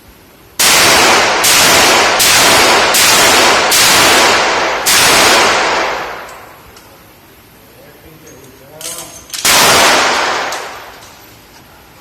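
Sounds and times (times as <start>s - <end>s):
handgun shots: 0.6s - 6.4s, 9.4s - 11.0s.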